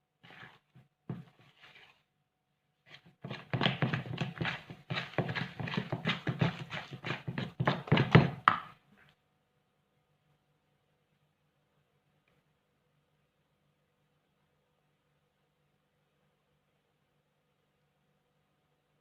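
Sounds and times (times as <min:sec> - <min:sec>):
dough thumps and slaps: 0:02.9 - 0:08.8.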